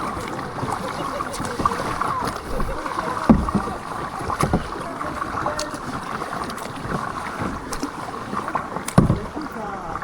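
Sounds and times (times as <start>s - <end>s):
faint voices: 0.0s - 8.3s
water splashing around paddles: 0.0s - 10.0s
short knocks: 1.3s - 7.9s, 8.8s - 9.4s.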